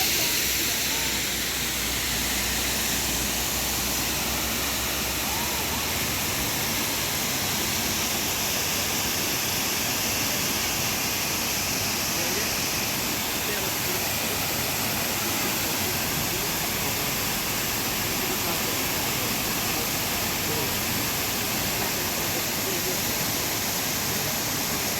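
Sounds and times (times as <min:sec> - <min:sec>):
waterfall rushing: 0:00.0 - 0:24.9.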